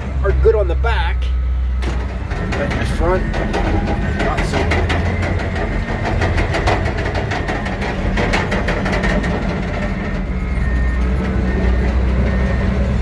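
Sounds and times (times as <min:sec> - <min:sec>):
bulldozer diesel engine running: 0:00.0 - 0:13.0
metallic clanks: 0:01.8 - 0:13.0.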